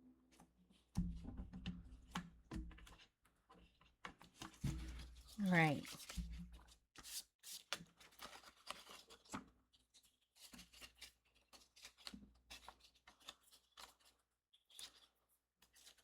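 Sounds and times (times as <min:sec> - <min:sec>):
paper rustling: 0:07.0 - 0:09.4, 0:10.4 - 0:15.1.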